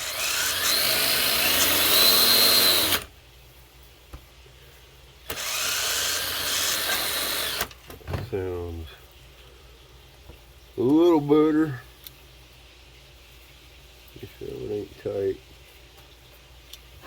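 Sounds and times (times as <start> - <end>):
electric motor whine: 0.0 - 3.1, 5.3 - 7.7.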